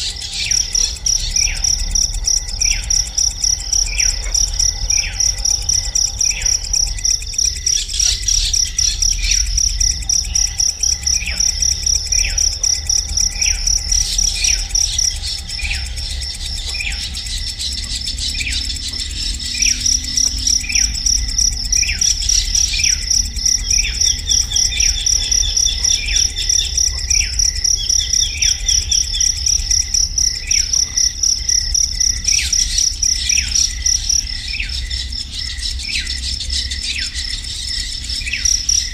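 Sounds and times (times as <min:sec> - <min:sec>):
bird chirping: 0:00.0 - 0:31.0
insect high-pitched trill: 0:00.0 - 0:38.9.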